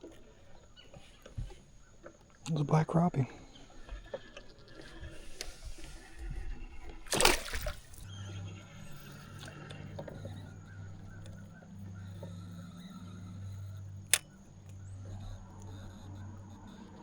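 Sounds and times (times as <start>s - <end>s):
water splash: 7.1s - 8.1s
sharp click: 12.8s - 15.8s.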